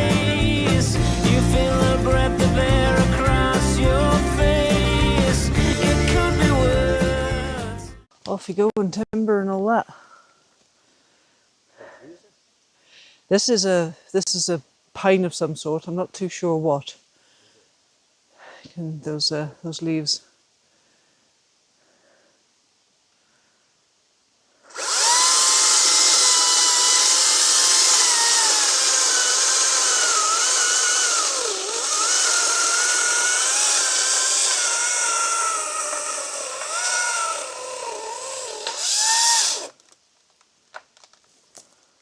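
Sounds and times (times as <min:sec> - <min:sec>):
chainsaw cutting wood: 0:00.0 - 0:07.7, 0:24.7 - 0:39.9.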